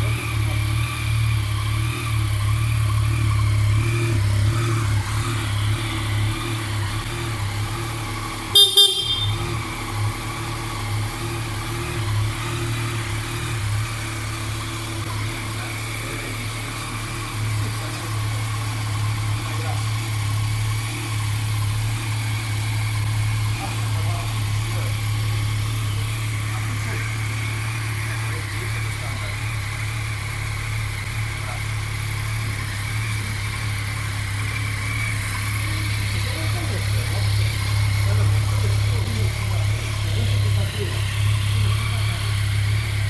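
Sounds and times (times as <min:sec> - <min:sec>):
motorcycle engine idling: 0:00.0 - 0:43.0
horn beeping: 0:08.4 - 0:09.9.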